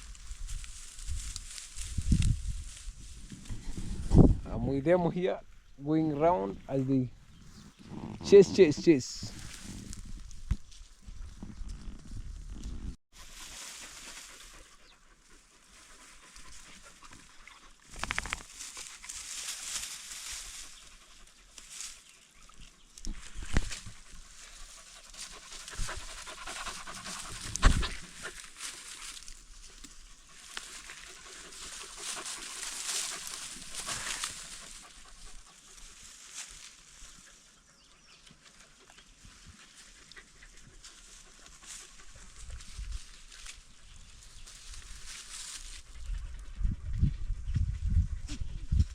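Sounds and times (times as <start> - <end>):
dogs panting: 13.2 - 17.9, 23.8 - 36.2, 37.0 - 42.9.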